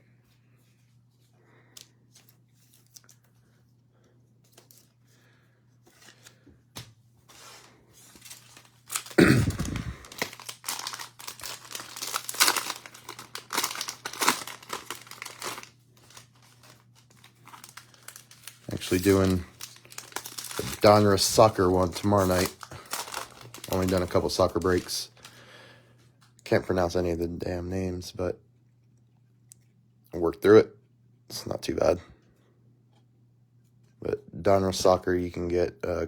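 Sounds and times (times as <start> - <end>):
cellophane wrapper tearing and crinkling: 7.3 - 25.4.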